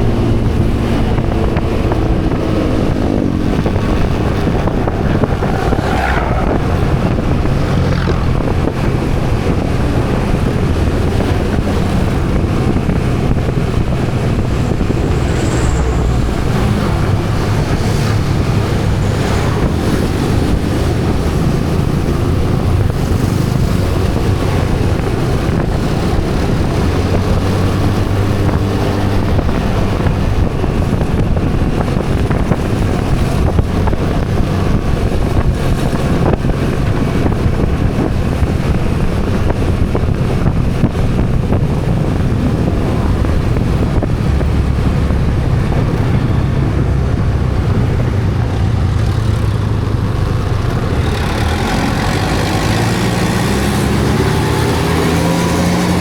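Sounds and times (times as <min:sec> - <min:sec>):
engine tone rising in pitch: 0:00.0 - 0:10.4, 0:12.6 - 0:23.6
engine rumble: 0:00.0 - 0:56.0
wind rush on microphone: 0:00.0 - 0:56.0.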